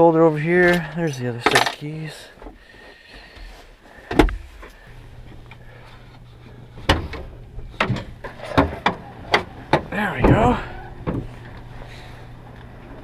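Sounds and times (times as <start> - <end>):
steady low hum: 0.0 - 13.0
car fittings clicking and clunking: 6.8 - 11.7.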